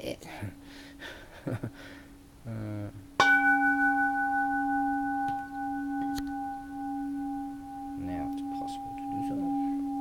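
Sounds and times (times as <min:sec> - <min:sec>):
temple bell ringing: 0:03.2 - 0:10.0.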